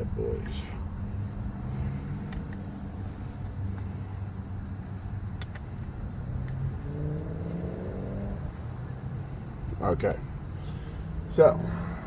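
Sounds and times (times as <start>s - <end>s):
steady low rumble: 0.0s - 12.0s
light clicks from handling parts: 2.2s - 2.7s, 5.3s - 6.6s.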